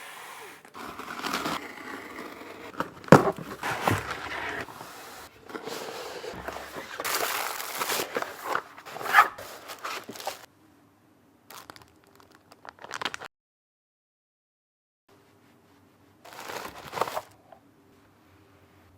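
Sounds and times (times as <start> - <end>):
cardboard and wrapping crinkling: 0.4 - 10.5, 11.5 - 13.3, 16.3 - 17.4.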